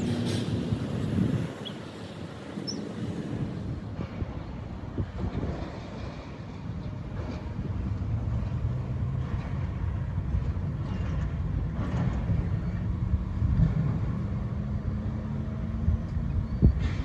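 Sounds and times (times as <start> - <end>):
heavy machinery engine rumbling: 0.0 - 4.0.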